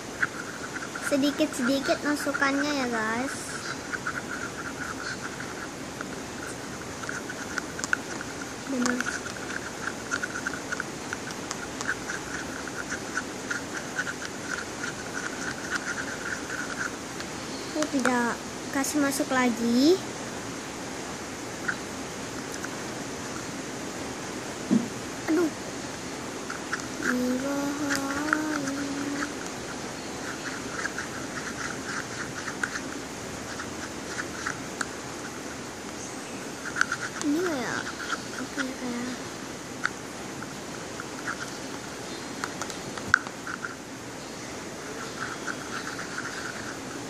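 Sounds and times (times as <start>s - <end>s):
light rain hiss: 0.0s - 47.0s
small irregular clicks: 3.6s - 18.2s, 26.5s - 36.0s, 36.6s - 38.8s, 39.8s - 41.6s, 42.4s - 43.8s, 45.0s - 47.0s.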